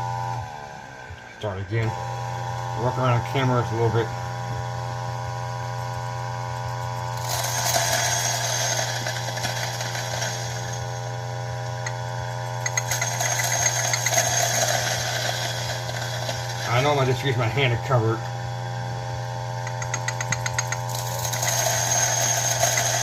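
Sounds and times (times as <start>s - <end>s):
coffee grinder motor hum: 0.0s - 23.0s
coffee beans grinding: 5.7s - 18.2s, 19.5s - 23.0s
rapid clicking: 12.6s - 16.6s, 19.6s - 23.0s.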